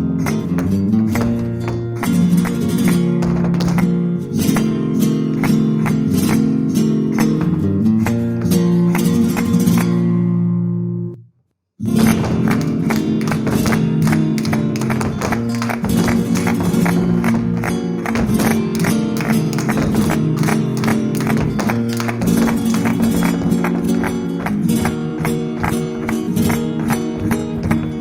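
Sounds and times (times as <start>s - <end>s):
flamenco guitar with percussive strikes: 0.2s - 10.3s, 11.9s - 28.0s.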